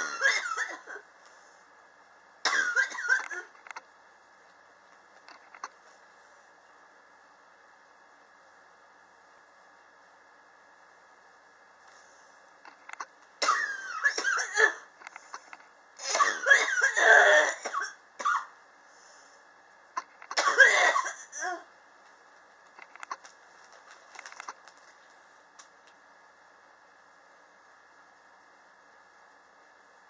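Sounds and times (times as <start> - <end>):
person coughing: 0.0 - 1.0, 2.5 - 3.5, 13.4 - 14.9, 16.0 - 18.5, 20.3 - 21.7.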